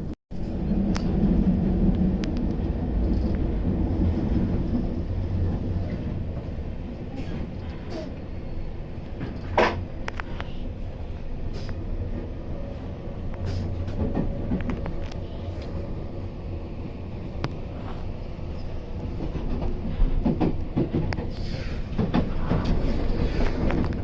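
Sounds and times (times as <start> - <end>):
train rumbling on rails: 0.0 - 24.0.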